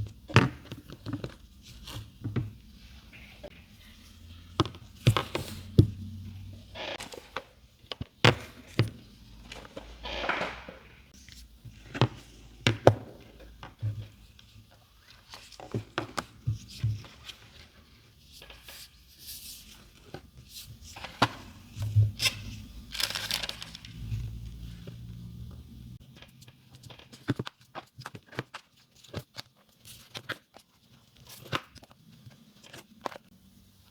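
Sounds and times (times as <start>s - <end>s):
packaging rustling: 22.2s - 24.5s.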